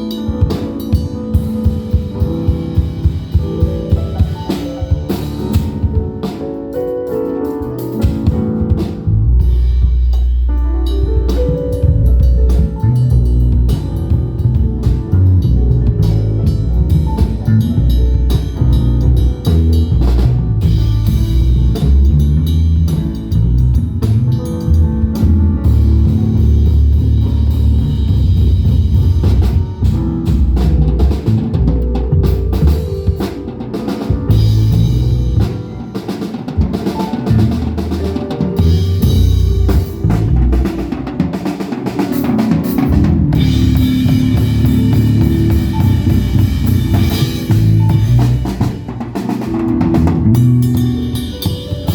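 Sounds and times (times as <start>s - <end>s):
live band playing: 0.0s - 10.2s, 10.9s - 51.9s
kick drum and snare beat: 0.5s - 6.4s.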